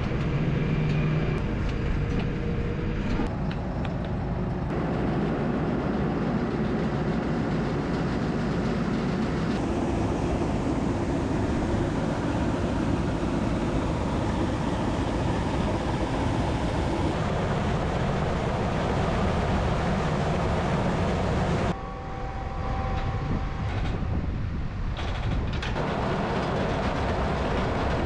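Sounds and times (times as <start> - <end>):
tractor rattling rumble: 0.0 - 17.4, 24.9 - 28.0
faint steady whine: 9.4 - 24.6.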